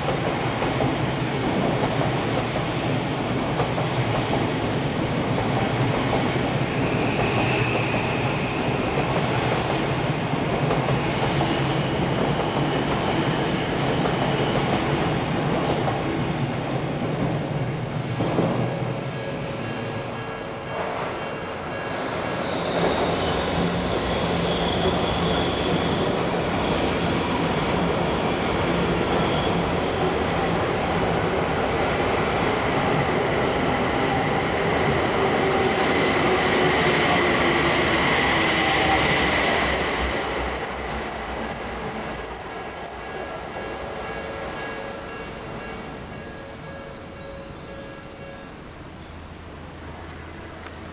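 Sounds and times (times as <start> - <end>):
train wheels rumbling on rails: 0.0 - 19.2, 20.6 - 46.8
steel wheel squeal: 22.0 - 27.0, 49.9 - 50.9.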